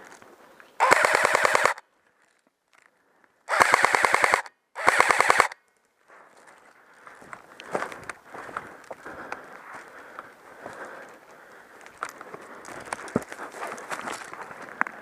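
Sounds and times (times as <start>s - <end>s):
airsoft rifle firing bursts: 0.8s - 1.8s, 3.5s - 5.6s.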